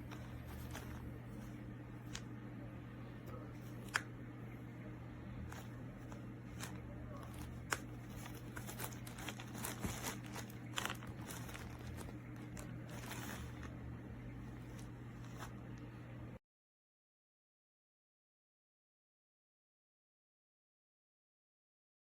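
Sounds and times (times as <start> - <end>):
crinkling rustles: 0.0 - 2.3, 5.4 - 13.8, 14.4 - 15.8
low electrical hum: 0.0 - 16.4.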